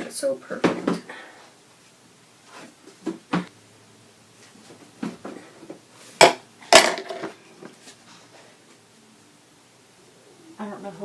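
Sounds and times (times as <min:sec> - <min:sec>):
utensils knocking and clattering: 0:06.2 - 0:07.4.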